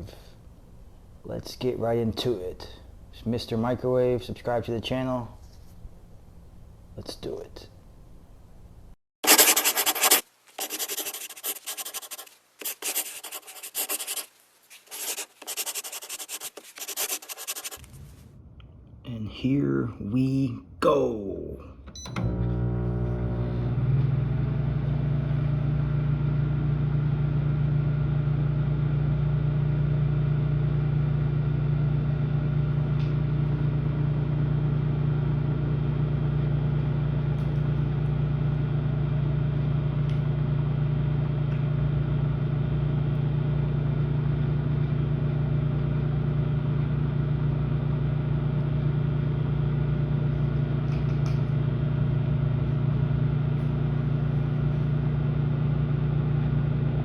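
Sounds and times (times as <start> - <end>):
microwave oven humming: 21.7 - 57.0.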